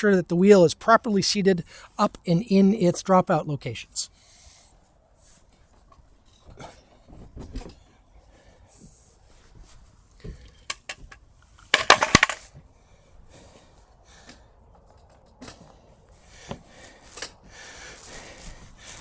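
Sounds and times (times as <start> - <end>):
small clicks and knocks: 10.2 - 12.5
metal clanking and rattling: 10.7 - 12.4.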